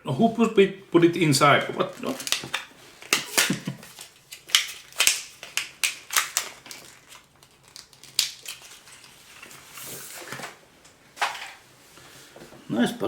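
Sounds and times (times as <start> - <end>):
packaging rustling: 1.1 - 11.8
packaging crinkling and clicking: 1.6 - 11.6.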